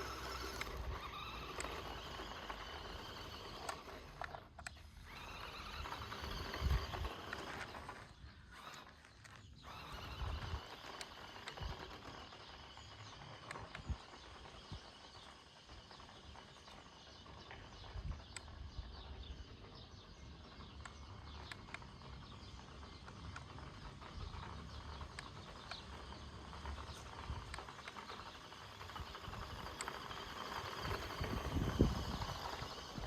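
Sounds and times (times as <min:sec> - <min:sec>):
toy car rattling over stones: 0:00.0 - 0:33.0
low wind rumble: 0:25.9 - 0:33.0.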